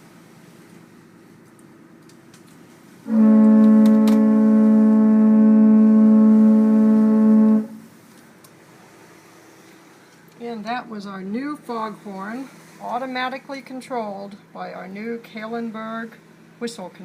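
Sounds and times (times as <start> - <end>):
foghorn long blast: 3.0 - 8.0.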